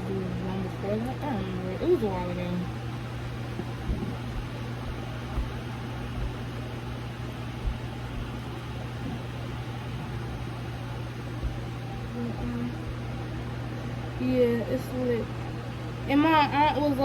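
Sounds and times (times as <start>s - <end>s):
steady low hum with hiss: 0.0s - 17.0s
faint knocks: 3.5s - 6.6s.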